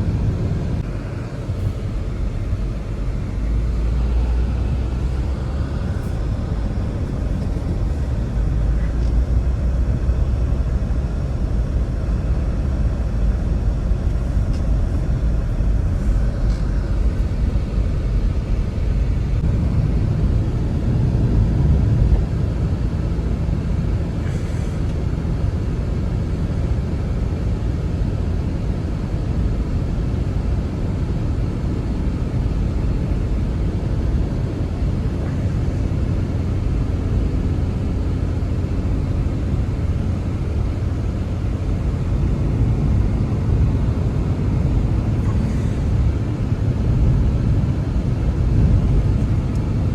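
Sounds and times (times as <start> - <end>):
wind blowing hard: 0.0 - 11.6, 33.6 - 49.9.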